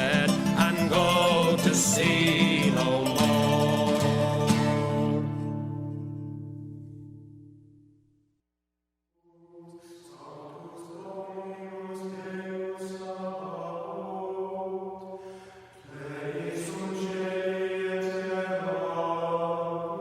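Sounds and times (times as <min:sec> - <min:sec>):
chant-like long held notes: 0:09.3 - 0:20.0.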